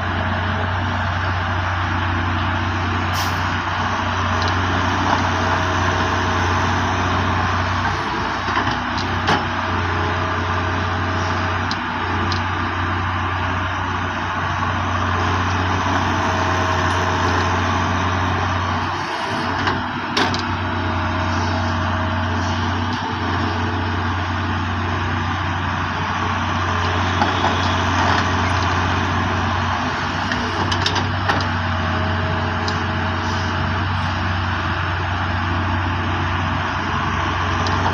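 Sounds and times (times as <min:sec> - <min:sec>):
heavy diesel engine running: 0:00.0 - 0:37.9.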